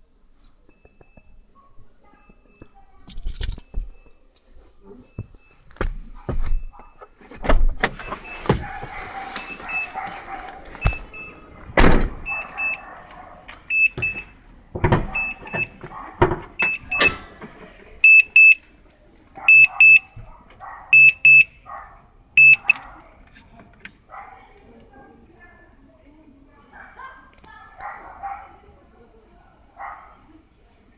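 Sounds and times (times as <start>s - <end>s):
high-pitched double beeps: 21.0s - 21.5s, 22.4s - 22.7s.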